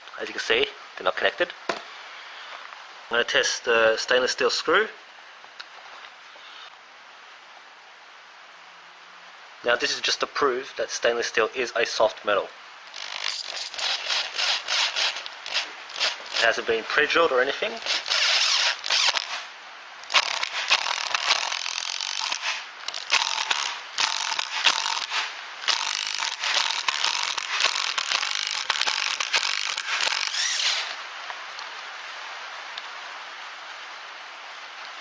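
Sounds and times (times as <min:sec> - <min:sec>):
power driver driving screw: 0:12.9 - 0:16.6, 0:17.8 - 0:31.0.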